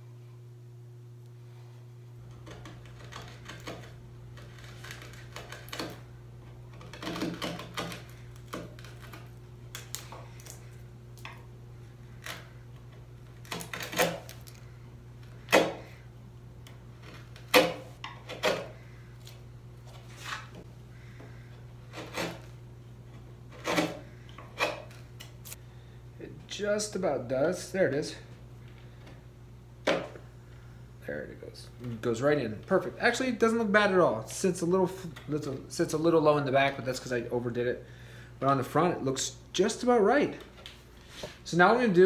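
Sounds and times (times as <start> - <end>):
chisel paring and scraping wood: 2.3 - 6.0, 6.7 - 9.3.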